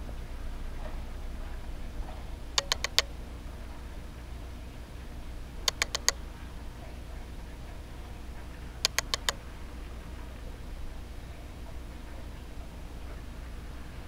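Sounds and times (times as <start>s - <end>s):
low steady hum: 0.0s - 14.0s
sharp clicks: 2.6s - 3.1s, 5.6s - 6.2s, 8.8s - 9.4s.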